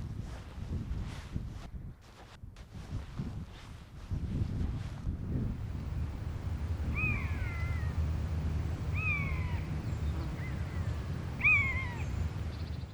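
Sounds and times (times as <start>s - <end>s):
low wind rumble on microphone: 0.0s - 12.9s
buzzard mewing call: 6.8s - 8.1s, 8.9s - 12.2s.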